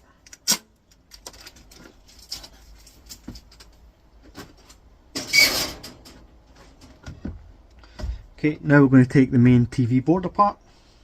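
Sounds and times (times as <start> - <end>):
sheet metal clatter: 5.2 - 6.3.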